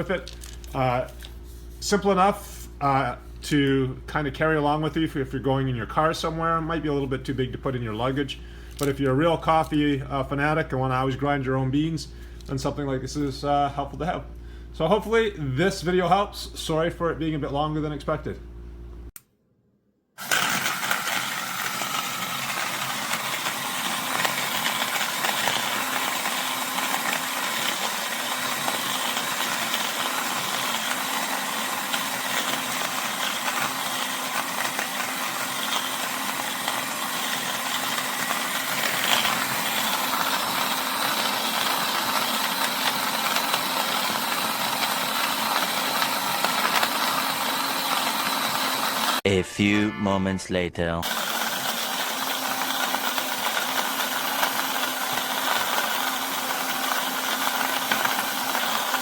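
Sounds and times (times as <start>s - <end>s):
coffee grinder grinding: 0.0s - 1.8s, 20.2s - 49.2s, 51.0s - 59.0s.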